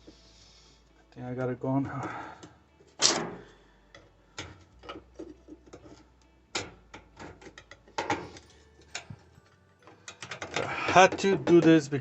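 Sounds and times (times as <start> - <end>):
hand tools clicking and knocking: 4.0 - 12.0.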